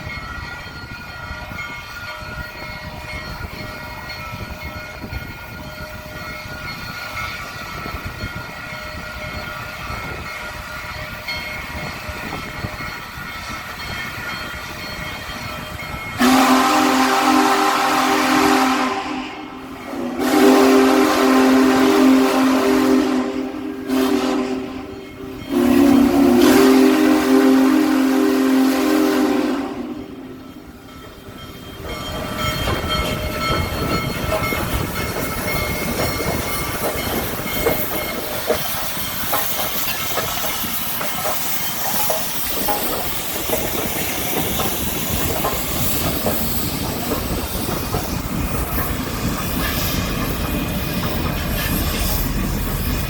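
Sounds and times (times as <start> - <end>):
train rumbling past: 0.0 - 53.0
steam whistle chord: 16.2 - 30.6.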